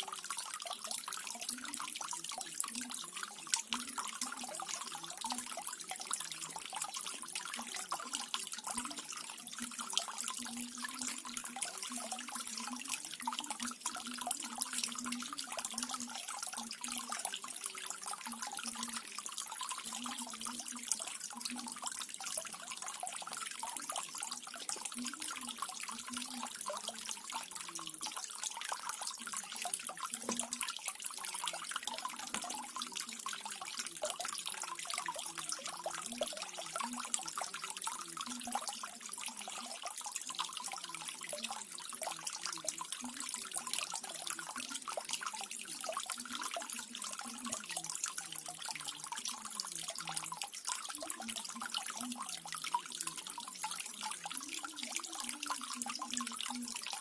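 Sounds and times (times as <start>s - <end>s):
small waterfall splashing and trickling: 0.0s - 57.0s.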